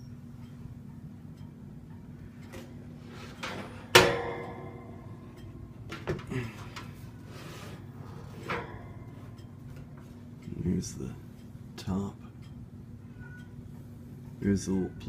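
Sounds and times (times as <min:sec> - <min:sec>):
metal fan cabinet knocking: 0:03.4 - 0:07.1, 0:08.0 - 0:10.1.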